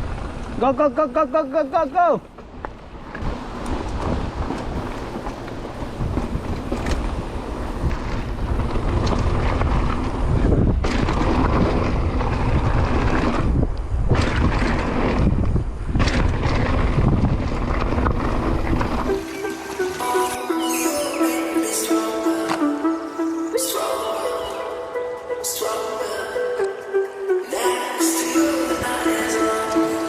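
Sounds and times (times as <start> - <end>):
wind buffeting microphone: 0.0 - 20.2
bike tyres on dirt trail: 0.0 - 23.9.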